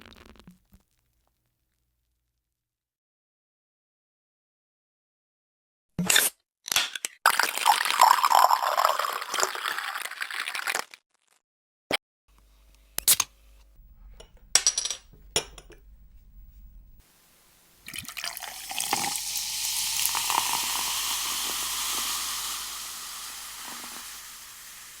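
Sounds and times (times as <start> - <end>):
drink pouring or fizzing: 7.3 - 11.0, 17.0 - 25.0.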